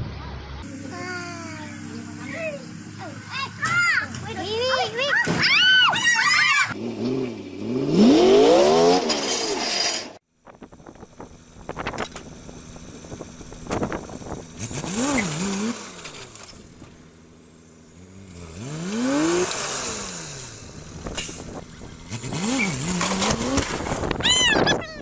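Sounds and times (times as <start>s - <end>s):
heavy vehicle engine revving: 6.7s - 25.0s.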